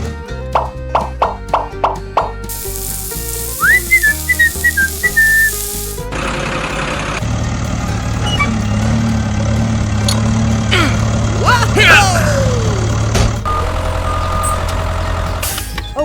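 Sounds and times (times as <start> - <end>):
background music: 0.0 - 6.4
hiss: 2.5 - 6.1
whistle playing high notes: 2.6 - 6.1
low engine-like hum: 6.5 - 15.4.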